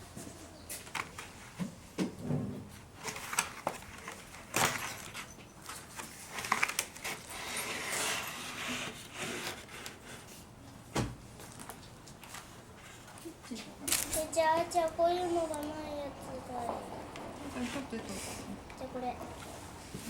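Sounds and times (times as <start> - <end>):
objects being handled: 0.1 - 10.5.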